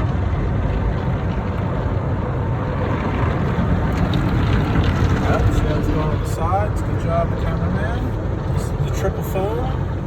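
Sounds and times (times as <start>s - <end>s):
car wash jets spraying water: 0.0s - 10.0s.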